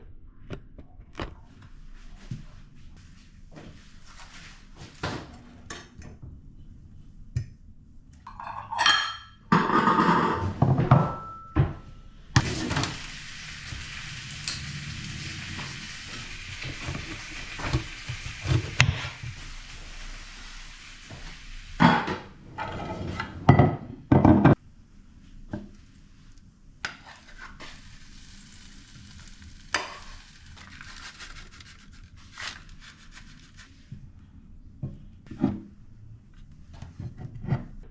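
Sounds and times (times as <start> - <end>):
dishes and cutlery clattering: 8.3 - 11.8
steady hiss: 12.4 - 21.8.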